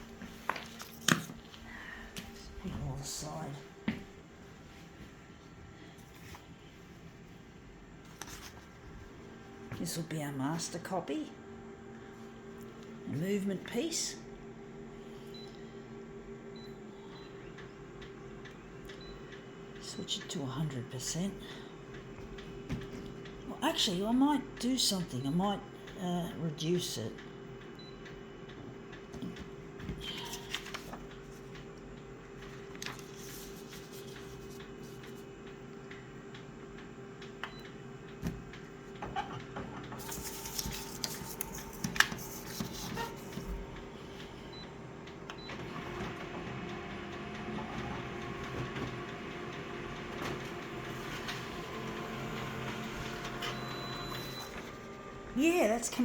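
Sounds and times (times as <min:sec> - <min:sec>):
photocopier humming: 0:26.6 - 0:56.0.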